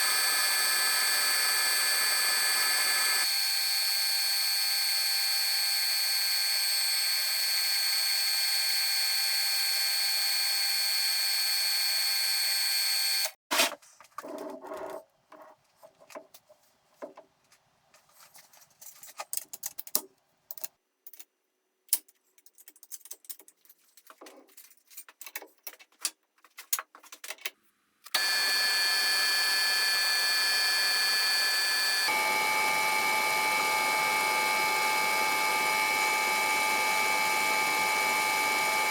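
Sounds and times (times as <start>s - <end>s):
metal lathe whining: 0.0s - 13.3s, 28.2s - 38.9s.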